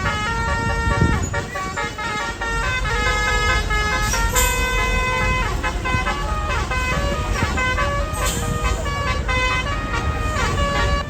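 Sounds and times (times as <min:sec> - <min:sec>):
musical air horn melody: 0:00.0 - 0:11.0.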